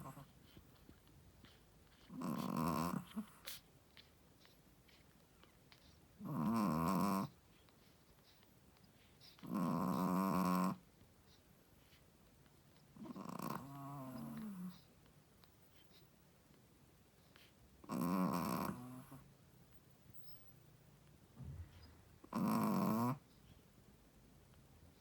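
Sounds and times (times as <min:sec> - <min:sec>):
dog snoring: 0:01.4 - 0:03.6, 0:06.2 - 0:07.4, 0:09.2 - 0:10.8, 0:13.0 - 0:14.9, 0:17.8 - 0:19.2, 0:21.6 - 0:23.2.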